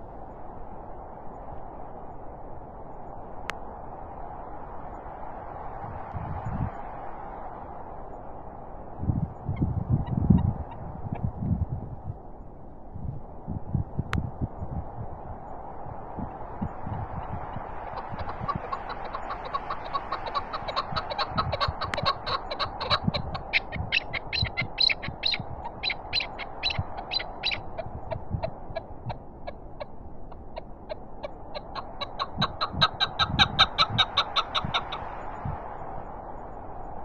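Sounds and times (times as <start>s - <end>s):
wind buffeting microphone: 0.0s - 37.0s
partridge clucking calls: 16.2s - 35.5s.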